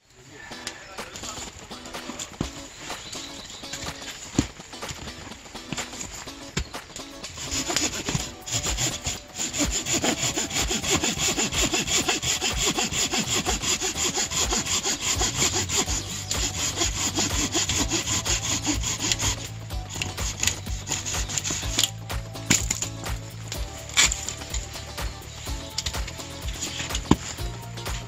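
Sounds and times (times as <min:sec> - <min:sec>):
hand saw cutting wood: 0:07.2 - 0:28.0.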